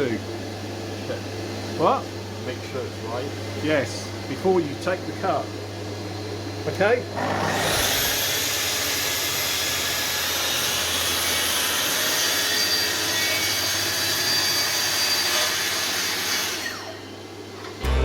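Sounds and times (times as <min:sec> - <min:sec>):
track saw cutting: 0:07.2 - 0:17.1.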